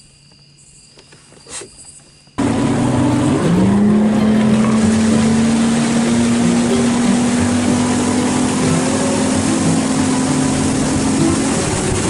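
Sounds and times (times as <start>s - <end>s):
crickets chirping: 0.0s - 12.0s
heavy rushing noise: 2.4s - 12.0s
loud engine running: 2.4s - 12.0s.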